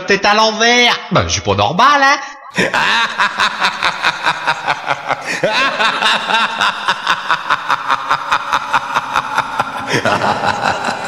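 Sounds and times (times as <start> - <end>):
sampled cackling laugh: 2.5 - 11.0.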